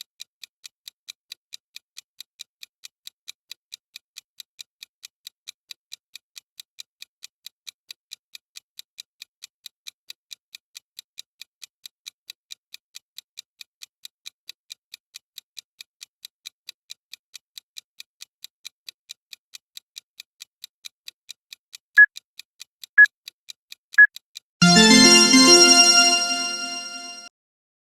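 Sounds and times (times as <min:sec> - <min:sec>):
ringing alarm tune: 0:24.6 - 0:27.2.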